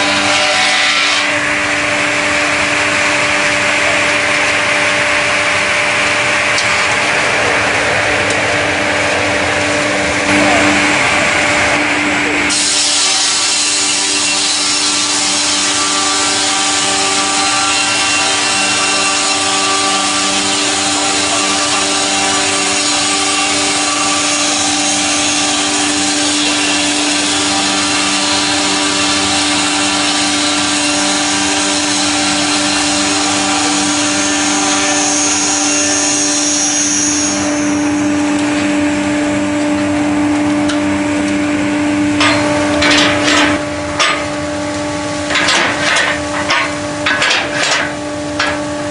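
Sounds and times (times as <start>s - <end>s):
saw blade rasping through wood: 0.0s - 1.5s, 12.5s - 37.8s, 45.3s - 48.6s
sawmill machine hum: 0.0s - 48.9s.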